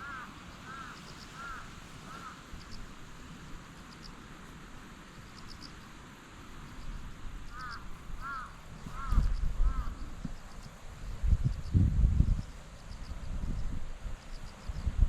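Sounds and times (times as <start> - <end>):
animal calling: 0.0 - 2.7
outdoor background noise: 0.0 - 15.0.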